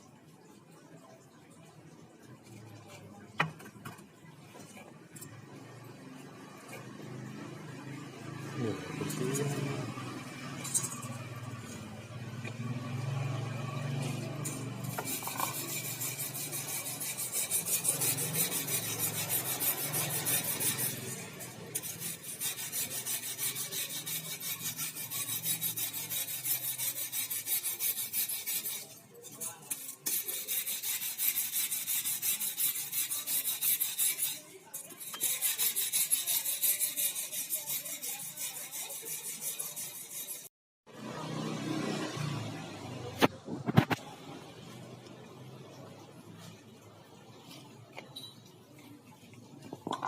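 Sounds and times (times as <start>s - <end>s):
filing metal engine part: 4.7s - 40.5s.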